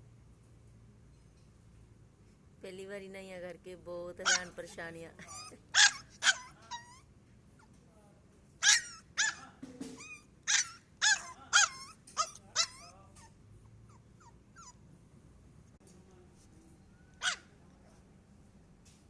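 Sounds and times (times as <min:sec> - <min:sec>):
puppy yipping barks: 0:04.2 - 0:04.6, 0:05.2 - 0:07.0, 0:08.6 - 0:14.8, 0:17.2 - 0:17.6
faint small yips: 0:05.3 - 0:15.2.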